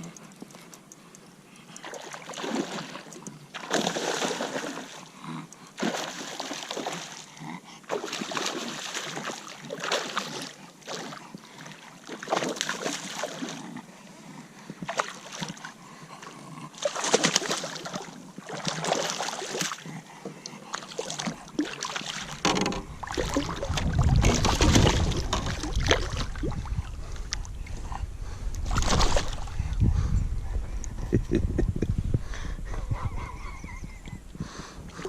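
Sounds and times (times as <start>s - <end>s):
water splashing against kayak: 1.8s - 5.1s, 16.8s - 19.8s, 20.7s - 27.5s, 28.6s - 29.6s
low rumble: 22.7s - 35.0s.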